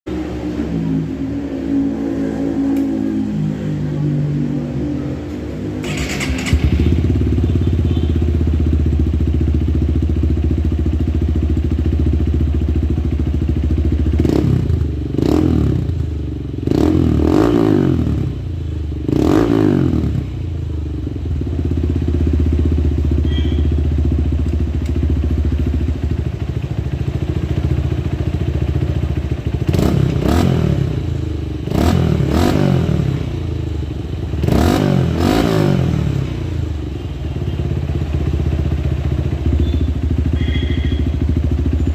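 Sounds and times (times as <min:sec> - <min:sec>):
engine revving: 0:00.1 - 0:07.3, 0:14.2 - 0:16.0, 0:16.6 - 0:18.4, 0:19.1 - 0:20.3, 0:29.6 - 0:33.5, 0:34.3 - 0:36.5
motorcycle engine idling: 0:04.8 - 0:16.8, 0:20.0 - 0:32.3, 0:33.0 - 0:34.5, 0:35.8 - 0:41.9.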